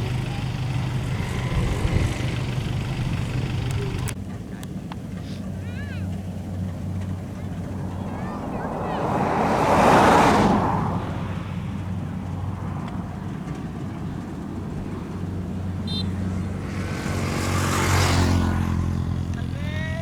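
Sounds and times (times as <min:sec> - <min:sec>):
diesel engine running under load: 0:00.0 - 0:04.2.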